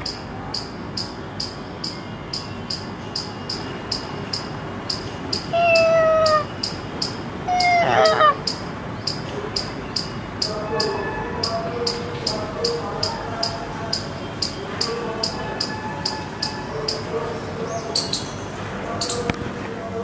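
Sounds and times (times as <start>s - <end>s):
pulsing high-pitched chirp: 0.0s - 7.8s, 17.9s - 18.4s
person imitating cat meows: 5.5s - 6.5s, 7.5s - 8.4s.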